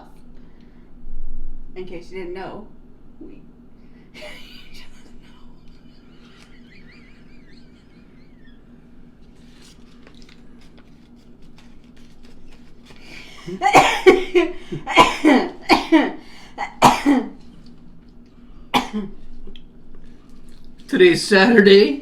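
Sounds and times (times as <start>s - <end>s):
person coughing hard: 13.4s - 17.4s, 18.7s - 19.2s.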